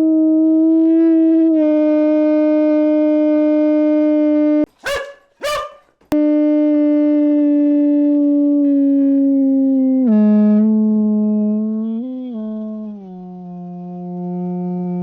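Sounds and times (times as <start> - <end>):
dog barking: 4.7 - 6.2
dog howling: 4.8 - 6.1.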